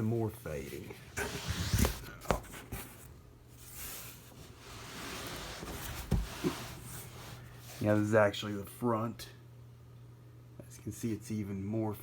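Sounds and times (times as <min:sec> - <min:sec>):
cardboard box scraping and rustling: 0:01.2 - 0:08.0.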